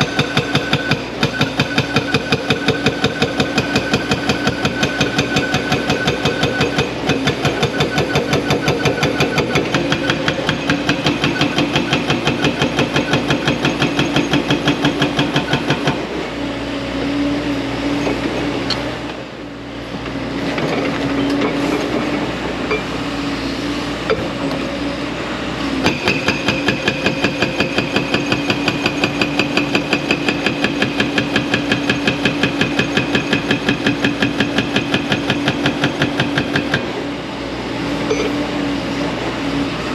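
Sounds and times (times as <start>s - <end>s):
hydraulic breaker hammering: 0.0s - 16.1s, 25.8s - 37.0s.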